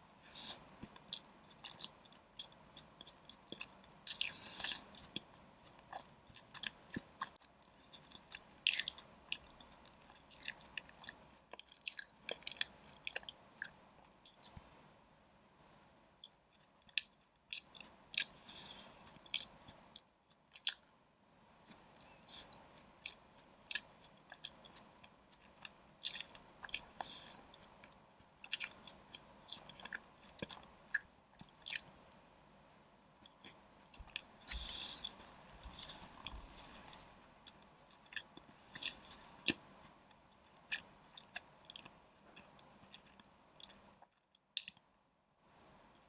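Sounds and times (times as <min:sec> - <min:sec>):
chewing and biting: 0:33.4 - 0:36.9, 0:37.5 - 0:39.7.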